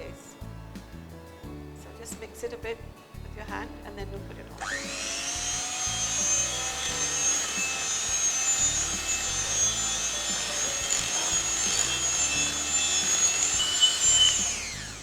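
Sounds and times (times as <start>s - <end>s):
electric mixer whining: 4.6s - 15.0s.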